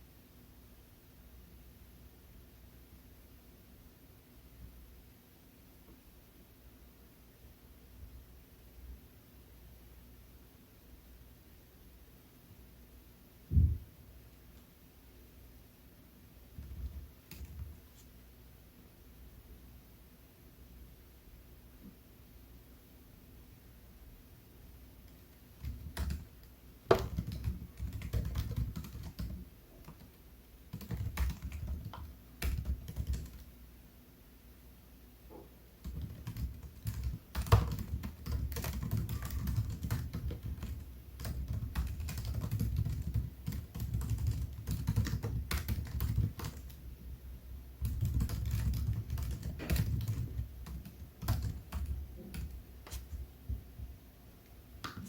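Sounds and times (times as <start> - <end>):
laptop keyboard typing: 16.6 - 17.8, 25.0 - 33.5, 35.8 - 46.8, 47.8 - 53.2.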